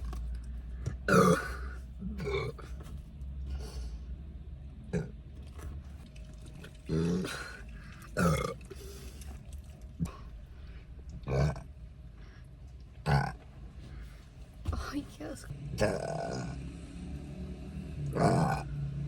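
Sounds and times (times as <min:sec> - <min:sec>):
low car rumble: 0:00.0 - 0:19.0
woman burping: 0:01.1 - 0:02.7, 0:08.2 - 0:08.6.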